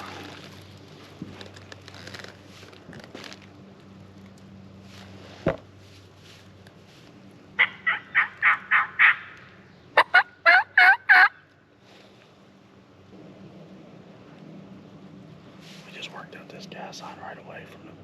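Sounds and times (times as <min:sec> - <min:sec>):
turkey yelps: 0:07.6 - 0:09.4, 0:10.0 - 0:11.4.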